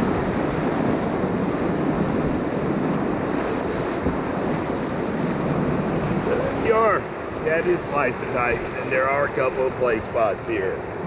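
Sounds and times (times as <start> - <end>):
whitewater rapid rushing: 0.0 - 11.0
wind buffeting microphone: 0.0 - 11.0.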